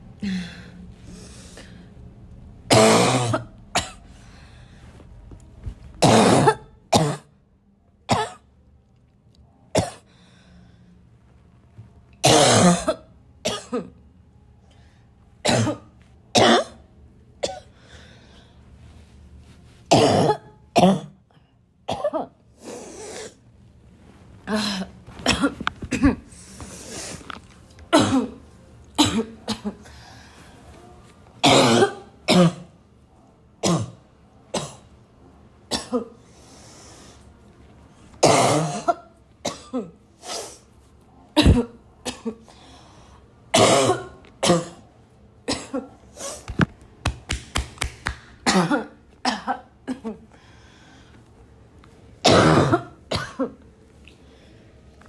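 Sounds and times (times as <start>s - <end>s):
person coughing harshly: 2.7s - 4.0s, 6.0s - 7.3s, 8.1s - 8.4s, 9.8s - 10.0s, 12.2s - 14.0s, 15.4s - 16.8s, 19.9s - 21.2s, 21.9s - 22.4s, 24.5s - 26.3s, 27.9s - 28.4s, 29.0s - 29.8s, 31.4s - 32.8s, 33.6s - 34.0s, 34.6s - 34.8s, 35.7s - 36.2s, 38.2s - 40.0s, 41.4s - 42.5s, 43.6s - 44.8s, 45.5s - 46.4s, 48.4s - 50.2s, 52.2s - 53.6s.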